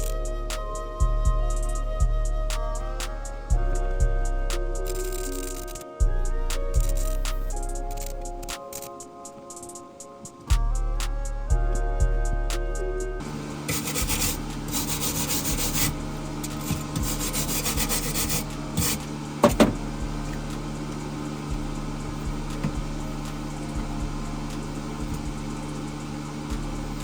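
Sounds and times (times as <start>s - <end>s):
steady low hum: 0.0s - 27.0s
welding arc crackling: 4.6s - 6.0s, 6.6s - 11.4s, 13.2s - 27.0s.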